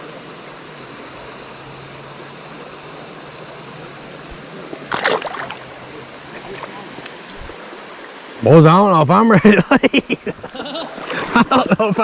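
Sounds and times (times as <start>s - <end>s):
river water rushing: 0.7s - 9.1s.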